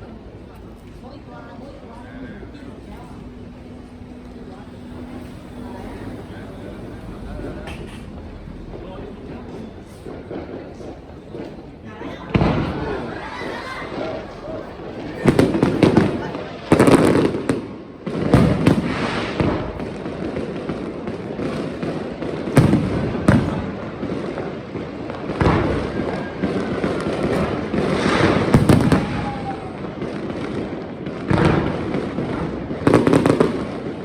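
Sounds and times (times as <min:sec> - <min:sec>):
fireworks crackling and rumbling: 0:00.0 - 0:34.0
firework shells bursting with bangs: 0:07.6 - 0:34.0
faint firework whistle: 0:25.2 - 0:30.7.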